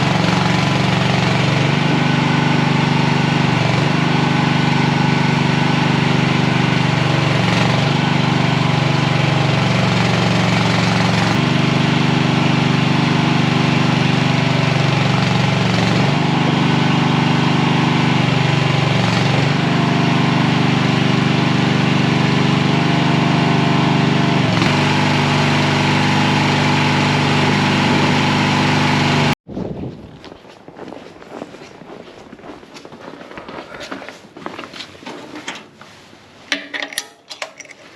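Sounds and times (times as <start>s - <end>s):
skid steer engine running: 0.0s - 29.4s.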